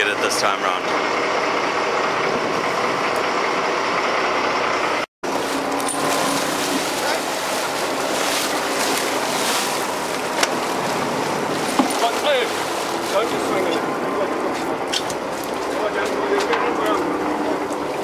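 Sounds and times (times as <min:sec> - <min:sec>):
boat engine running: 0:00.0 - 0:18.0
wind and water rushing: 0:05.2 - 0:16.4.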